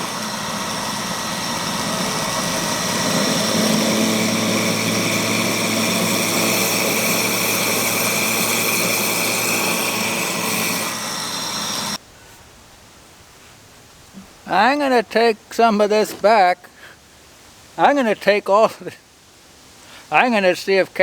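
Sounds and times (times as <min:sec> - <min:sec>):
grain grinder whining hum: 0:00.0 - 0:12.0.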